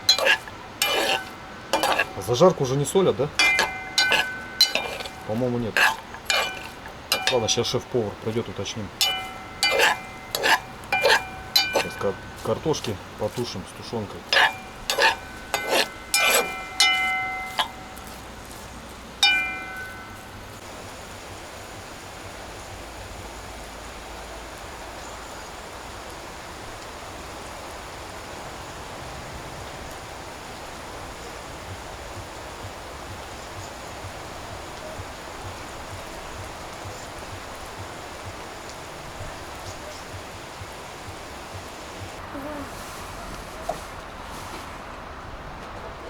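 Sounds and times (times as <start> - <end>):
utensils clinking on cooking pot: 0.0 - 20.6
steady hiss: 0.0 - 29.0, 29.6 - 44.9.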